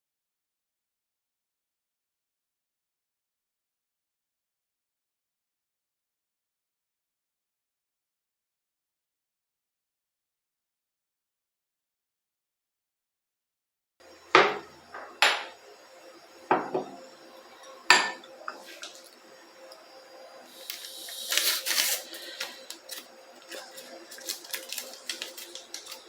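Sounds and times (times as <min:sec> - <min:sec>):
cutlery clinking: 0:17.9 - 0:19.0.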